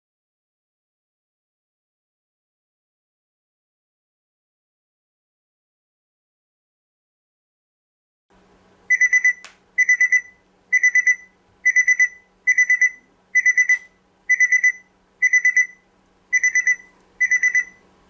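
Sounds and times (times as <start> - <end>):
alarm clock beeping: 8.9 - 17.8.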